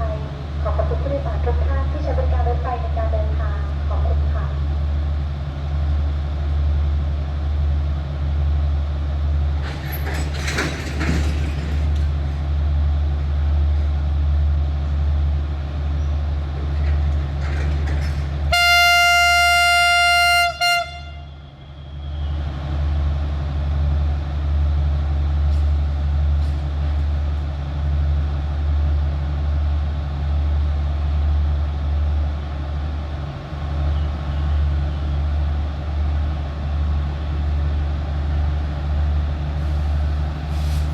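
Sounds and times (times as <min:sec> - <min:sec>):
locomotive idling rumble: 0:00.0 - 0:40.9
locomotive horn blast: 0:18.5 - 0:22.5
brief hiss: 0:40.5 - 0:40.9.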